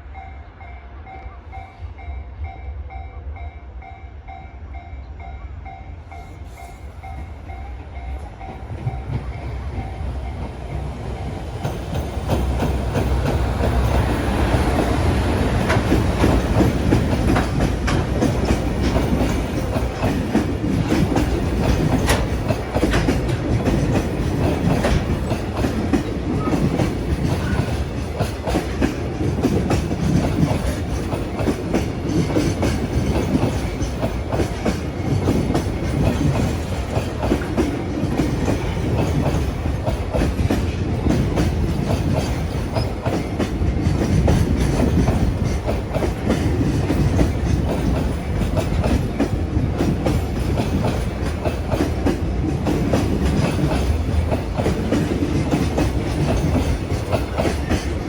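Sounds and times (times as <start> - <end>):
freight train rumbling: 0.0 - 58.0
wheels clattering over rail joints: 11.6 - 58.0.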